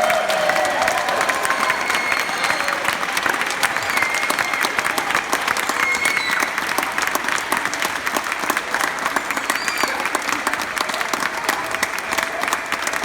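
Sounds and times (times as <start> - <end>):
audience applauding: 0.0 - 13.0
faint whistles or shouts: 1.4 - 3.0, 3.6 - 6.7, 9.2 - 10.2.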